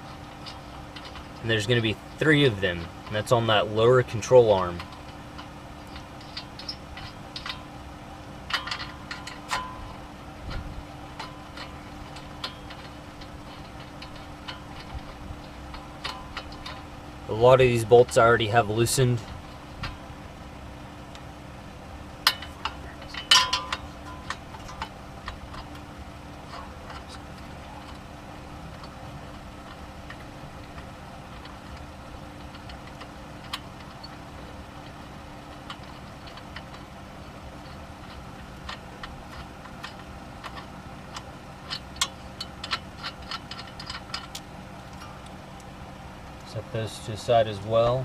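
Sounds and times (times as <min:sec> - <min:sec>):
metal clanks: 0:00.0 - 0:48.0
steady low hum: 0:00.0 - 0:48.0
ratchet clicking: 0:08.5 - 0:16.9, 0:37.6 - 0:45.1.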